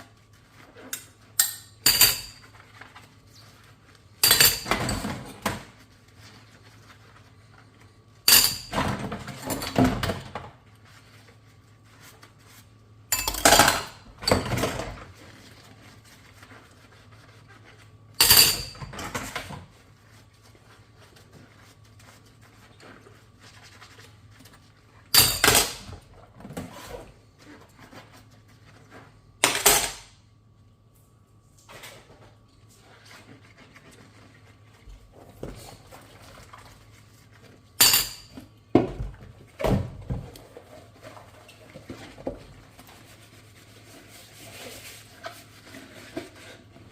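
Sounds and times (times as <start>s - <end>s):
dishes and cutlery clattering: 4.2s - 5.6s, 13.1s - 15.0s, 18.2s - 19.6s.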